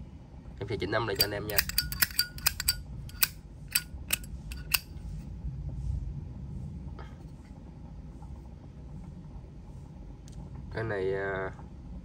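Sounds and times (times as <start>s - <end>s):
low steady rumble: 0.0s - 12.0s
lighter lid clicking: 1.2s - 4.9s.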